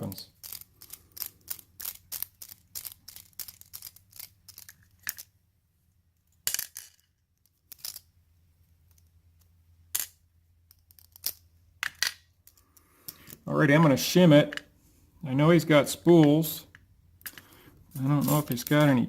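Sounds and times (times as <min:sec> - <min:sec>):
metal lock parts clicking: 0:00.4 - 0:05.3.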